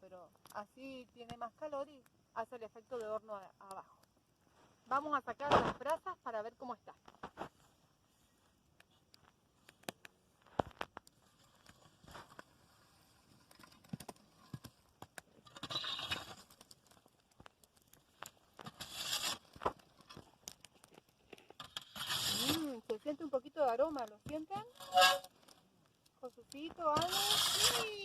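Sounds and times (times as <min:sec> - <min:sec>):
small clicks and knocks: 0:08.8 - 0:12.5, 0:13.4 - 0:22.1
embers being scraped: 0:09.2 - 0:25.7, 0:26.3 - 0:28.0.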